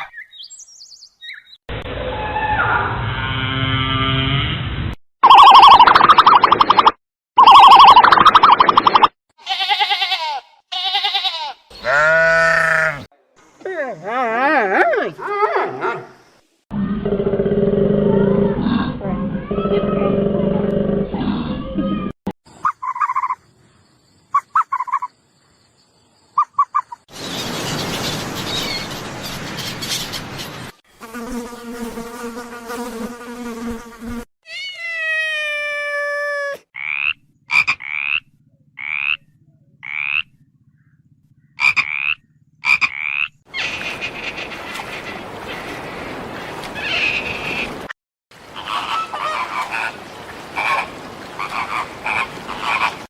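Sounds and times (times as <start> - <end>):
animal chirps: 5.2 - 9.1, 22.5 - 23.5, 24.3 - 25.2
low hum: 38.2 - 41.6.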